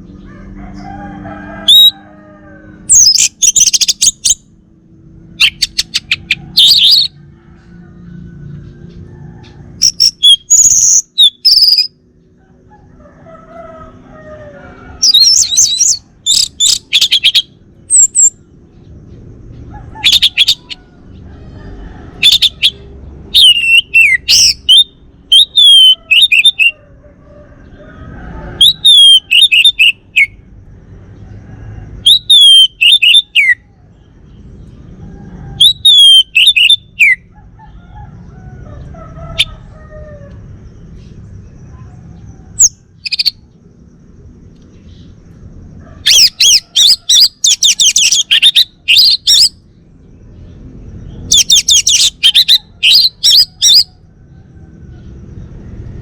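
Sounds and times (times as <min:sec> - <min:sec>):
thrush singing whistled notes: 0:02.9 - 0:04.6, 0:05.3 - 0:07.2, 0:09.8 - 0:12.0, 0:15.0 - 0:18.4, 0:22.2 - 0:26.7, 0:28.6 - 0:30.5, 0:32.0 - 0:33.7, 0:35.6 - 0:37.3, 0:46.1 - 0:49.6, 0:51.0 - 0:54.0.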